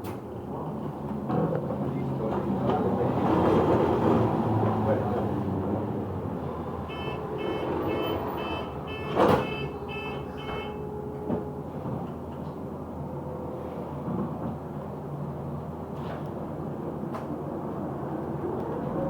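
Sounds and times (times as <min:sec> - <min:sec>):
bus engine rumble: 0:00.0 - 0:19.0
bus door warning beeps: 0:06.8 - 0:11.5
bus doors shutting with a bang: 0:06.9 - 0:12.5.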